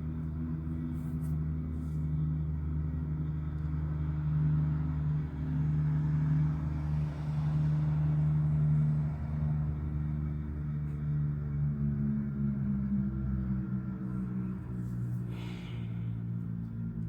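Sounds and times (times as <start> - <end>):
low droning hum: 10.9 - 17.0.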